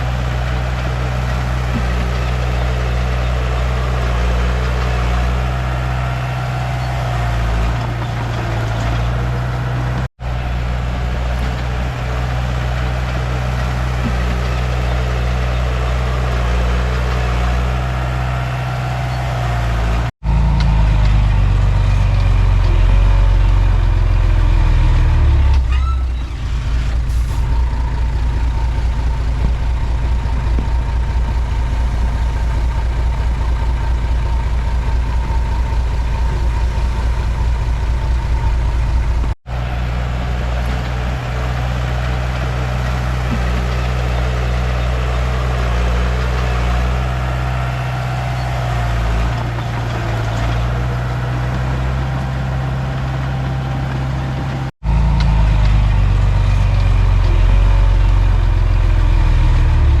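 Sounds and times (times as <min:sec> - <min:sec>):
bulldozer diesel engine running: 0:00.0 - 1:00.0.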